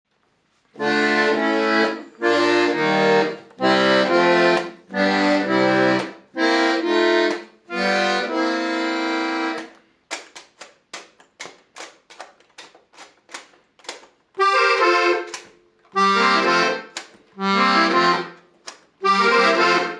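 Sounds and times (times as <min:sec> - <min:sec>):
accordion chords with bass notes: 0:00.8 - 0:09.8, 0:14.4 - 0:19.9
short clipped accordion notes: 0:00.8 - 0:09.9, 0:14.4 - 0:19.9.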